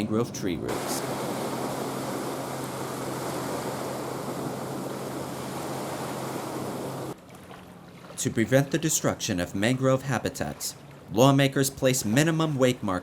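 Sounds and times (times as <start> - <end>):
rushing water wash: 0.0 - 7.2
motorboat engine humming: 0.0 - 13.0.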